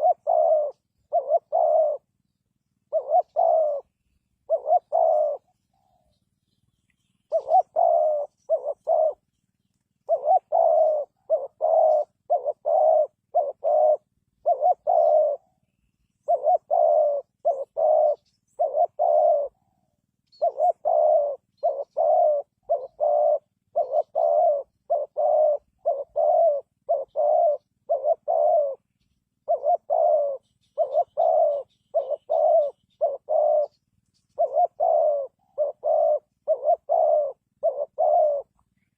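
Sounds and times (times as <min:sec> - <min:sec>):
dove cooing: 0:00.0 - 0:06.4, 0:07.0 - 0:38.9.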